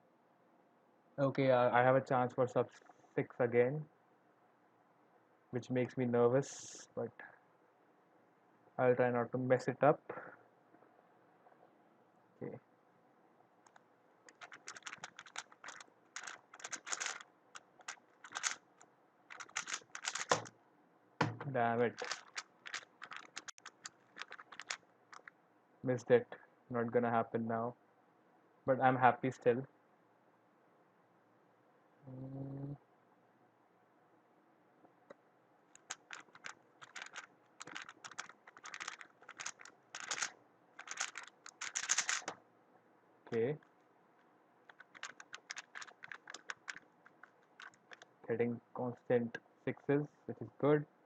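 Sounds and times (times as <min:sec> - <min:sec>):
puzzle cube plastic clicks: 0:13.7 - 0:20.5, 0:21.9 - 0:25.3, 0:35.7 - 0:42.4, 0:44.7 - 0:48.1.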